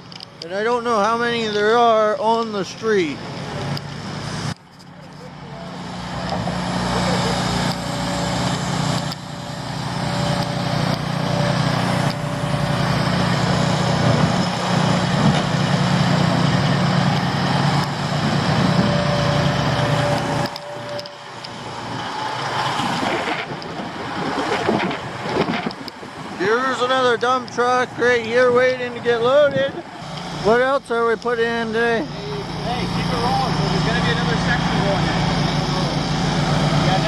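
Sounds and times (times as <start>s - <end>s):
heavy machinery diesel engines running: 0.0s - 37.0s
dirt loading into dump truck: 3.4s - 26.4s.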